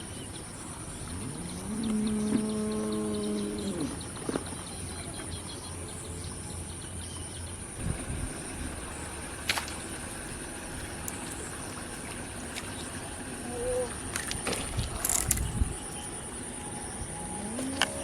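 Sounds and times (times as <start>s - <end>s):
birds or insects chirping: 0.0s - 18.0s
steady high-pitched drone: 6.0s - 18.0s
held low tone: 7.8s - 18.0s.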